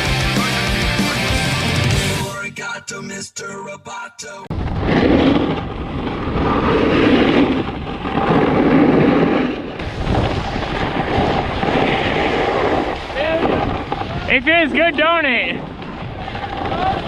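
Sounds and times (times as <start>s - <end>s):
wind on microphone: 4.5s - 17.0s
snowboard scraping icy snow: 4.6s - 17.0s.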